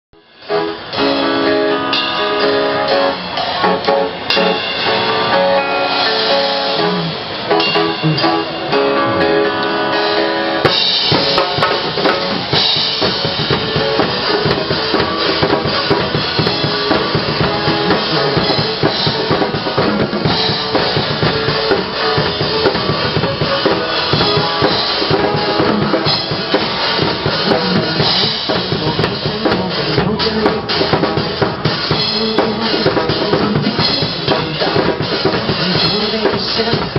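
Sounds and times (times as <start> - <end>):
guitar: 0.2 - 36.9
drum kit beat: 0.4 - 36.9.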